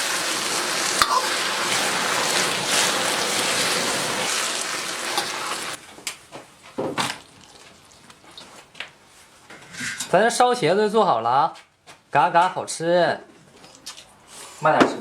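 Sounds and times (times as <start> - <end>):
vegetables sizzling in a wok: 0.0 - 5.8.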